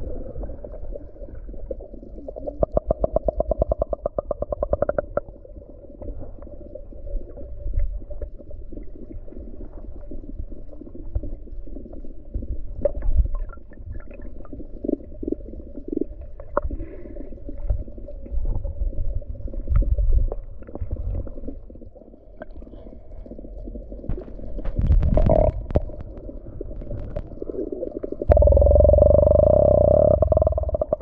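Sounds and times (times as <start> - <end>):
underwater seawater rumble: 0.0 - 31.0
small underwater clicks and knocks: 2.4 - 5.4, 24.0 - 31.0.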